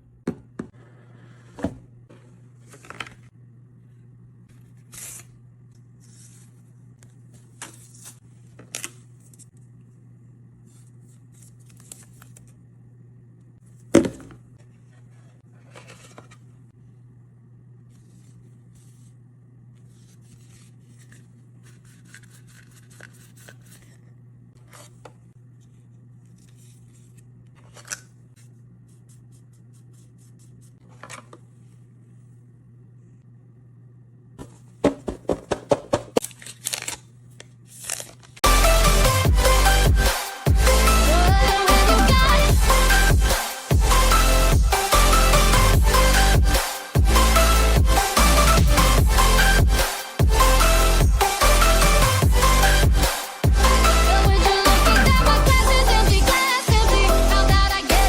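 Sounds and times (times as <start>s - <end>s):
steady low hum: 0.0s - 36.2s
packaging clicks and scrapes: 36.1s - 37.0s, 37.7s - 38.4s.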